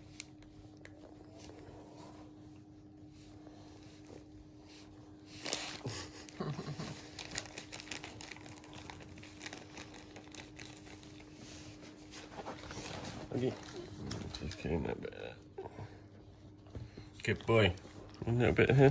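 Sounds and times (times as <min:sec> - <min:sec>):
tissue crinkling and rustling: 0:03.2 - 0:15.3.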